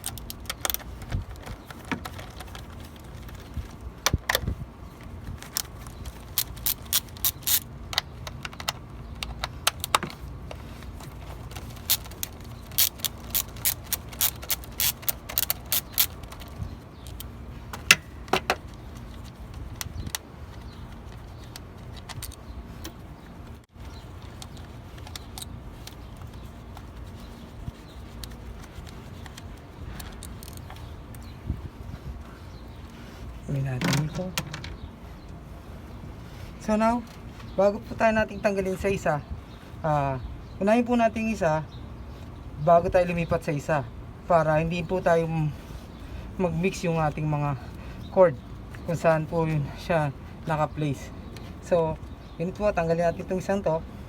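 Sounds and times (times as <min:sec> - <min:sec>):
ratchet wrench clicking: 0:06.0 - 0:07.7, 0:11.6 - 0:17.3.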